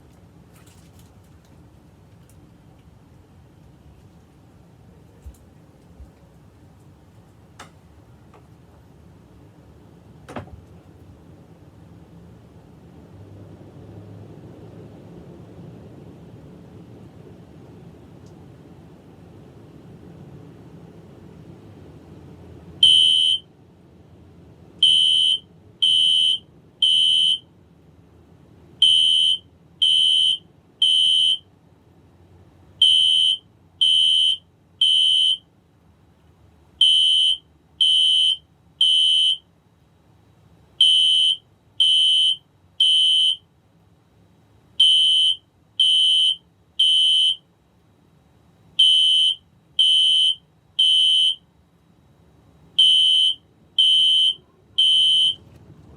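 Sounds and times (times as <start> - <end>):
fire alarm beeping: 22.8 - 23.5, 24.8 - 27.4, 28.8 - 31.4, 32.8 - 35.4, 36.8 - 39.4, 40.8 - 43.4, 44.8 - 47.4, 48.8 - 51.4, 52.8 - 55.4.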